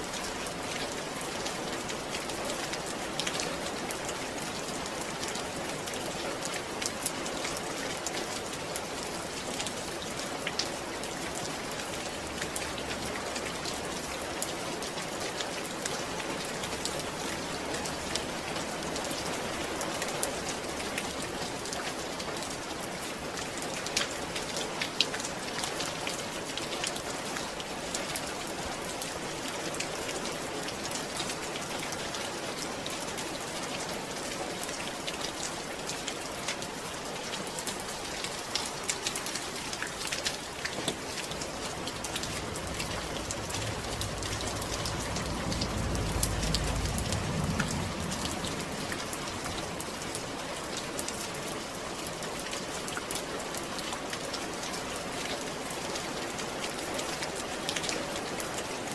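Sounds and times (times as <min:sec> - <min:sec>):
rain falling: 0:00.0 - 0:58.9
low rumble: 0:41.3 - 0:50.0.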